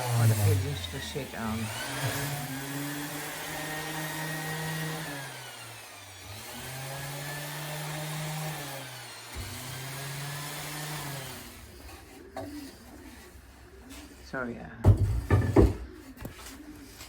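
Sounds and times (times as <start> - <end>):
electric power tool motor: 0.0 - 13.2.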